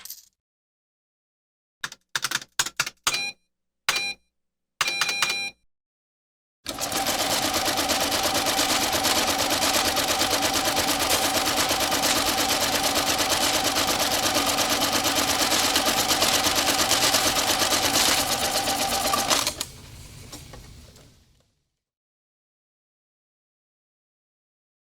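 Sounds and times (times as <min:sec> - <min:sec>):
banknote counting machine running: 0:06.7 - 0:19.7.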